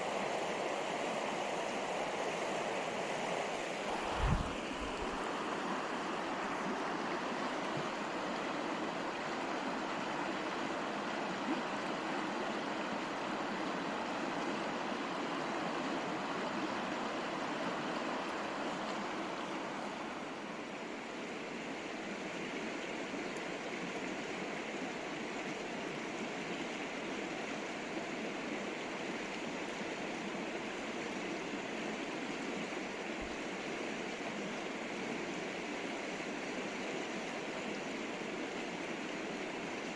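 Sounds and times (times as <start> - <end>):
river rushing over rocks: 0.0 - 20.7.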